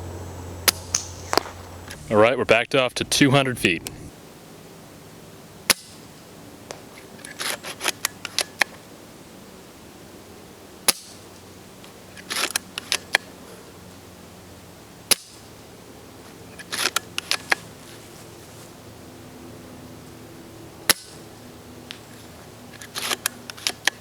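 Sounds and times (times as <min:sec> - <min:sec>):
airsoft rifle shot snap: 0:00.6 - 0:01.6, 0:10.9 - 0:11.2.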